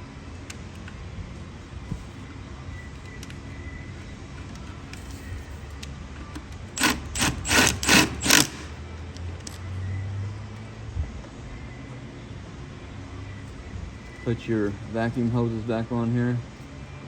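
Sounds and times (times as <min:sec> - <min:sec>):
ratchet wrench rattling: 0:06.8 - 0:08.8.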